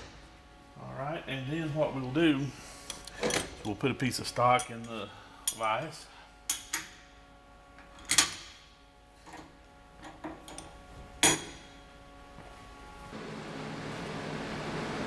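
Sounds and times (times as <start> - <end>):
steady machine hum: 0.0 - 15.0
metal clanks and knocks: 9.2 - 11.7.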